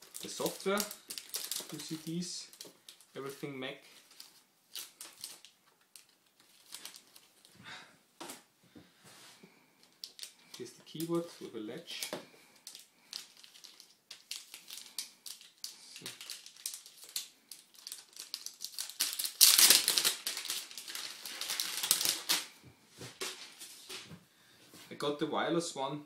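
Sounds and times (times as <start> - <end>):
packaging crinkling and clicking: 0.0 - 3.1, 4.1 - 7.5, 9.8 - 11.1, 11.9 - 22.5
packaging rustling: 0.0 - 7.6, 9.8 - 24.1.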